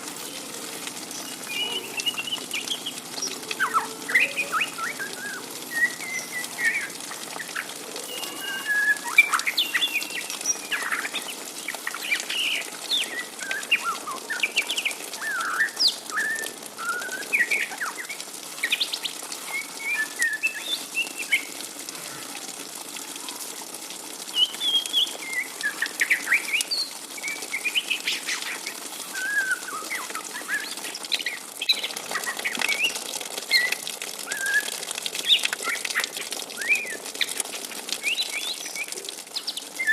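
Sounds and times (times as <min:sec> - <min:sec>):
bird twittering chirps: 0:01.1 - 0:19.0.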